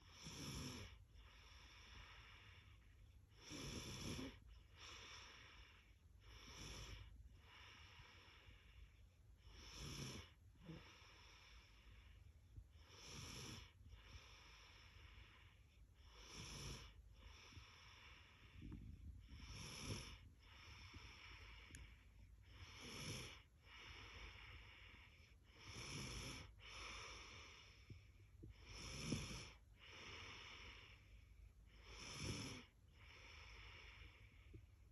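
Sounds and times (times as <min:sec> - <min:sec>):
girl snoring faintly: 0:03.4 - 0:05.6, 0:28.6 - 0:31.0.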